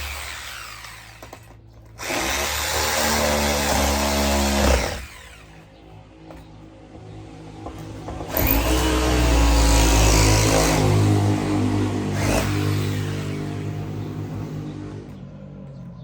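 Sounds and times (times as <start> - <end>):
motor running: 8.3 - 11.1, 12.1 - 14.7.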